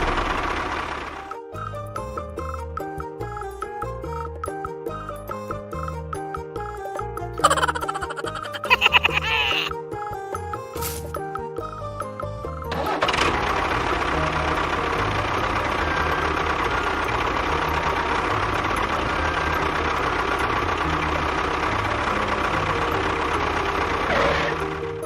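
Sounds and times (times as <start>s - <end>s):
small motor droning: 12.8s - 25.0s.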